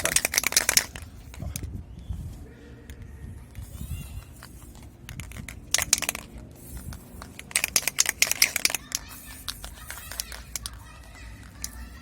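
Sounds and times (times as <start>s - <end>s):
container clicking and rattling: 0.0s - 1.7s, 4.2s - 12.0s.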